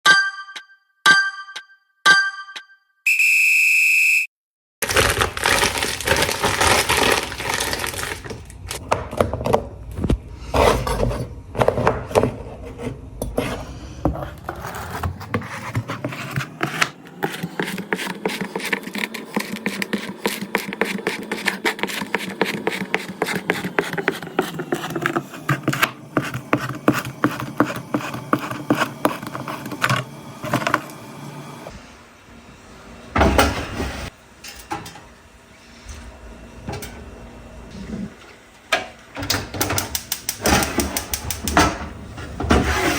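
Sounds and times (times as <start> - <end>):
dishes and food being handled: 4.8 - 30.9.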